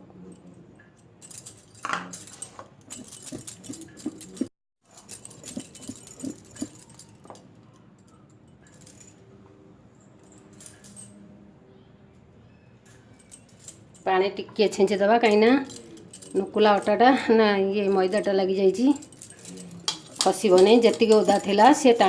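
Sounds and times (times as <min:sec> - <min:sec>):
kitchen utensils clinking against bowl: 0:01.3 - 0:07.5, 0:12.9 - 0:22.0.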